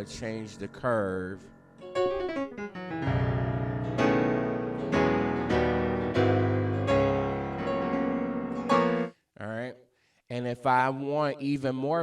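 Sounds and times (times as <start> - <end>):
piano chords: 0.0 - 9.1.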